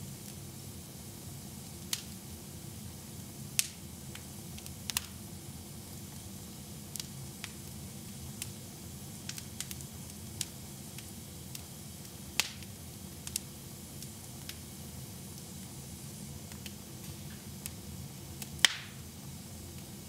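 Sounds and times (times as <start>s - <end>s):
wood fire crackling and popping: 0.2s - 0.5s, 1.3s - 20.0s.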